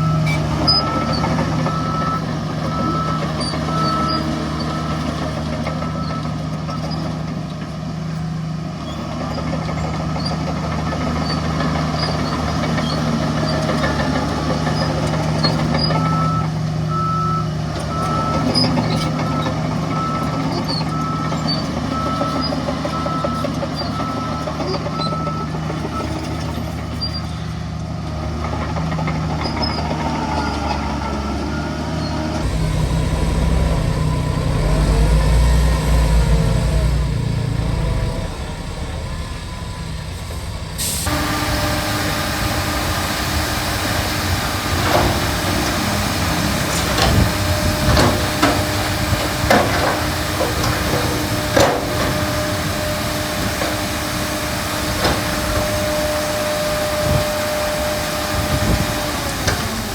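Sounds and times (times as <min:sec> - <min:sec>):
reversing alarm beeping: 0:00.0 - 0:07.1, 0:15.8 - 0:26.3, 0:30.2 - 0:36.6, 0:40.8 - 0:59.6
heavy diesel engines running: 0:00.0 - 0:59.9.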